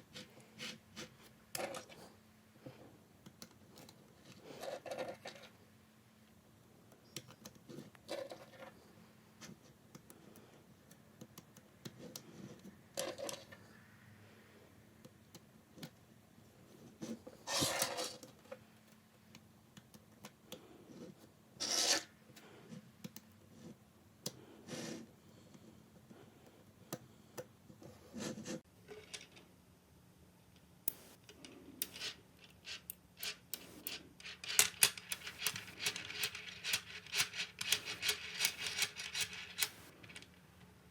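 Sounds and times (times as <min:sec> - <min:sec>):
magnetic balls clicking together: 0:30.9 - 0:40.3
sliding scrapes: 0:33.6 - 0:40.2.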